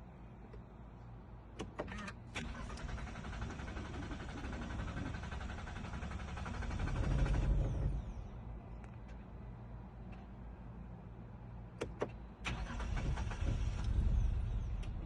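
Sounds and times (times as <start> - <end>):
starter motor clicks: 1.6 - 8.0
starter motor cranking engine: 2.4 - 8.1, 12.5 - 14.0.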